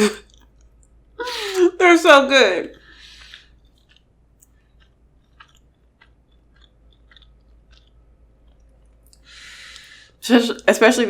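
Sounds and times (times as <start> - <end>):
chewing food mouth clicks: 0.2 - 1.0, 3.0 - 9.9.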